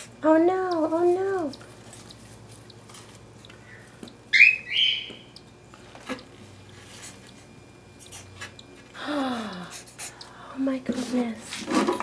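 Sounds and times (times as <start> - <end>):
cockatiel squawking: 4.3 - 5.2.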